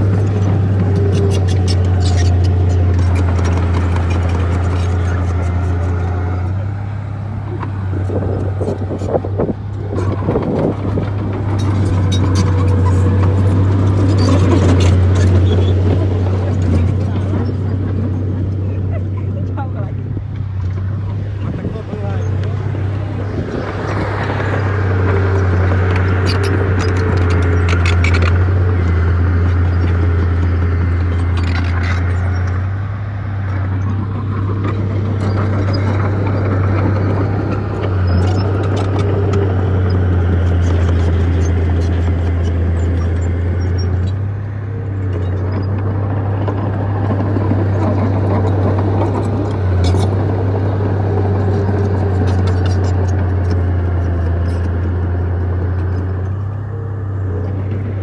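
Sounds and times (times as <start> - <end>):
light clicks and clanks: 0.0 - 6.6, 23.6 - 32.8, 45.0 - 56.5
diesel engine droning under load: 0.0 - 58.0.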